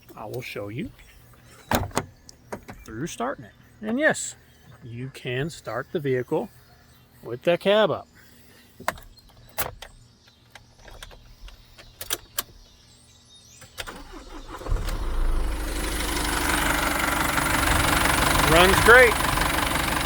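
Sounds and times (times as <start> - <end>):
diesel engine starting and idling: 13.8 - 20.0.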